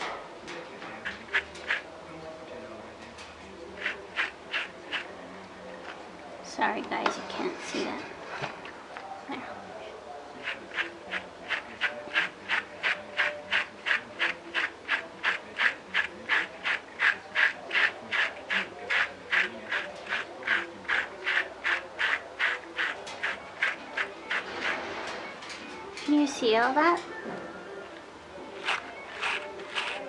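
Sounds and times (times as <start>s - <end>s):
brush scratching through fur: 1.2s - 1.9s, 3.8s - 5.1s, 10.4s - 24.9s, 28.6s - 30.0s.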